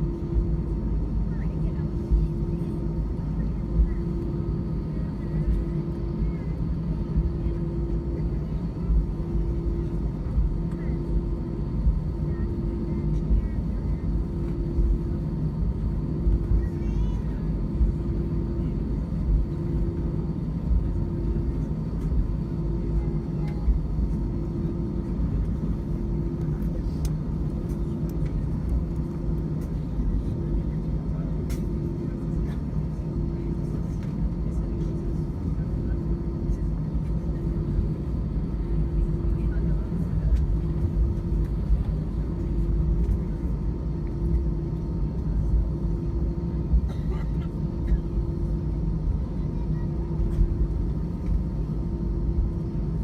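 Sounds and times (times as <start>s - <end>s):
aircraft cabin rumble: 0.0s - 53.0s.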